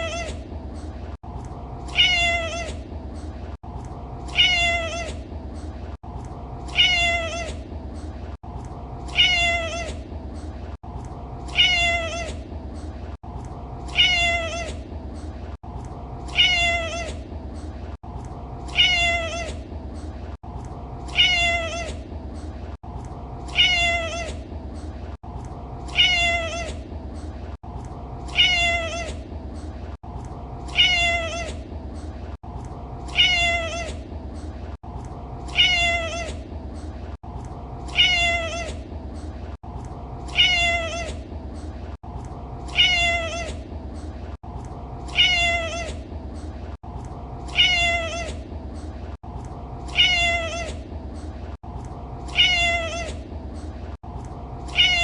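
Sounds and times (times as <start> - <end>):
cat meowing: 0.0 - 0.4, 1.9 - 2.8, 4.3 - 5.2, 6.7 - 7.6, 9.1 - 10.0, 11.5 - 12.4, 13.9 - 14.8, 16.3 - 17.2, 18.7 - 19.6, 21.1 - 22.0, 23.5 - 24.4, 25.9 - 26.8, 28.3 - 29.2, 30.7 - 31.6, 33.1 - 34.0, 35.5 - 36.4, 37.9 - 38.8, 40.3 - 41.2, 42.7 - 43.6, 45.1 - 46.0, 47.5 - 48.4, 49.9 - 50.8, 52.3 - 53.2, 54.7 - 55.0.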